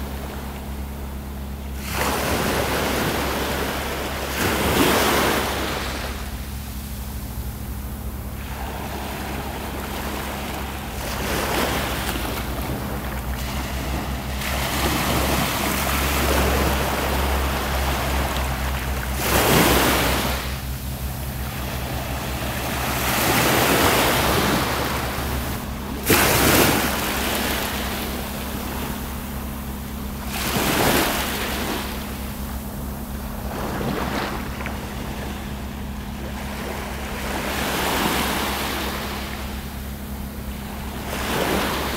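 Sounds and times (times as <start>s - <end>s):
small waves breaking on beach: 0.0s - 41.9s.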